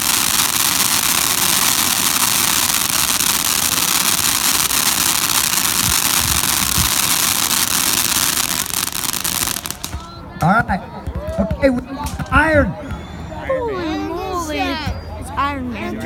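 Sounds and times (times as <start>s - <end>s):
firework hissing and crackling: 0.0s - 10.1s.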